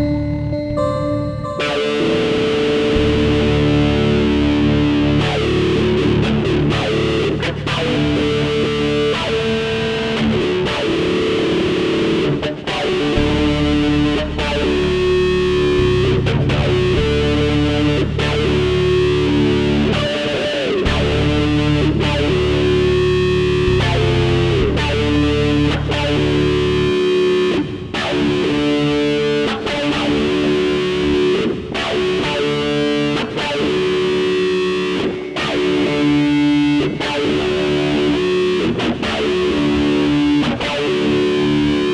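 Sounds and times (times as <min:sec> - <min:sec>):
heavy bass line: 0:00.0 - 0:08.0, 0:13.2 - 0:19.9, 0:20.9 - 0:27.0
distorted electric guitar: 0:00.0 - 0:41.9.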